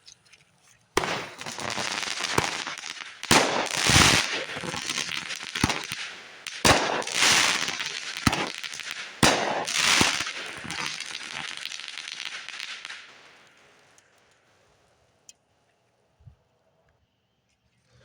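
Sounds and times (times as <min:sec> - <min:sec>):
hissing spray of sparks: 0:01.0 - 0:13.5
firework bangs: 0:01.0 - 0:14.0.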